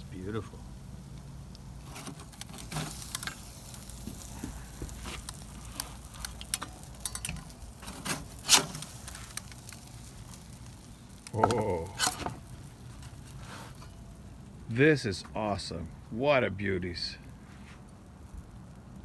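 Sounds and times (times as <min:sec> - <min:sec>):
meat being handled clicks and rustling: 0:01.2 - 0:14.5.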